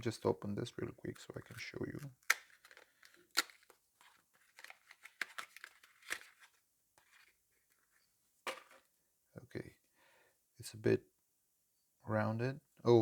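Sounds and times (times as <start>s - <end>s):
packaging being torn open: 1.4s - 6.5s.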